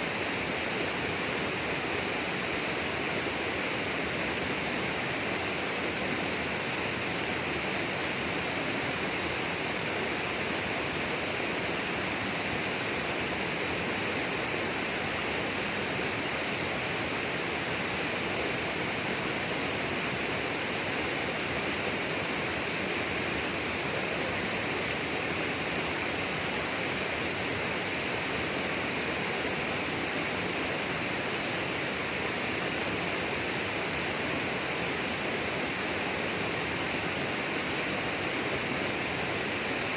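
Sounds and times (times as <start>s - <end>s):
flowing water rushing: 0.0s - 39.9s.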